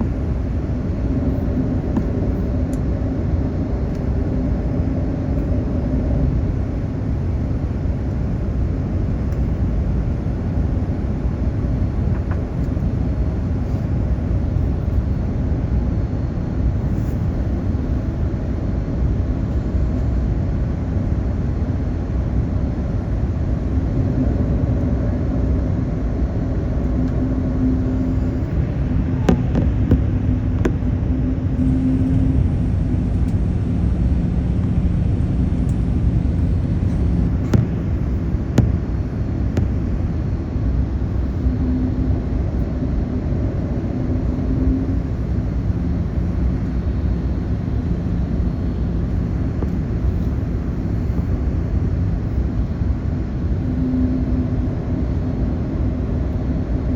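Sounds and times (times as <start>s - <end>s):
low hum: 0.0s - 21.4s, 22.8s - 56.9s
airliner engines rumbling: 0.0s - 56.9s.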